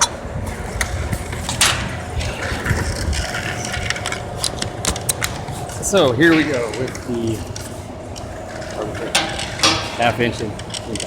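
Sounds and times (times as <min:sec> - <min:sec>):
metal tools clicking and knocking: 0:09.0 - 0:11.0.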